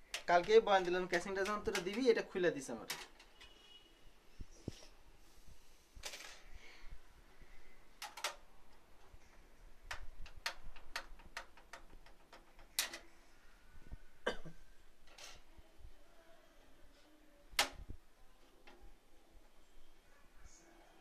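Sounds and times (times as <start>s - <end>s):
computer parts clicking and tapping: 0.0s - 3.6s, 7.9s - 13.1s.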